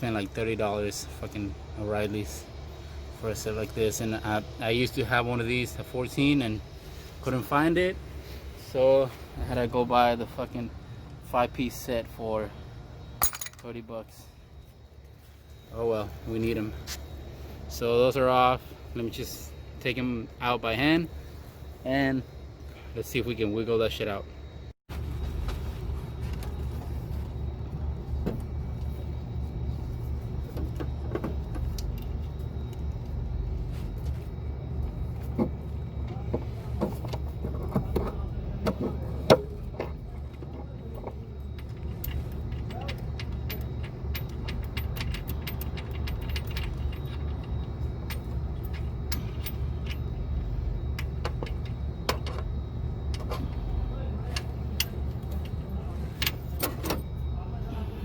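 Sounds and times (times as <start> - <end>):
light metallic knocks and clinks: 13.2 - 13.9, 34.9 - 57.3
steady low rumble: 24.3 - 58.0.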